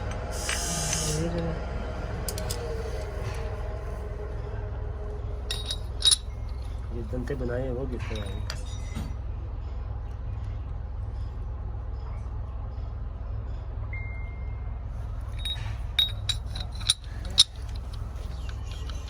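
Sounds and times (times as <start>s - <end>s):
steady low hum: 0.0s - 19.0s
metal parts clinking: 0.4s - 1.2s, 2.2s - 4.0s, 5.4s - 9.1s, 15.1s - 19.0s.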